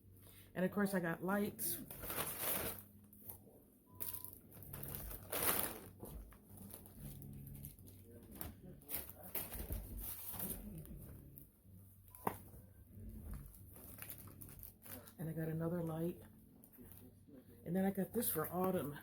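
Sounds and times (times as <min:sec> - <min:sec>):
plastic packaging crinkling: 0:01.8 - 0:02.9, 0:04.0 - 0:10.8, 0:13.3 - 0:15.2.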